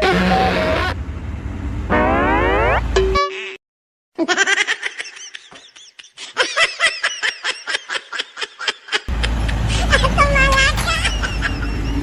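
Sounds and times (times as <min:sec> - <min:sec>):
person laughing: 0:04.2 - 0:12.0.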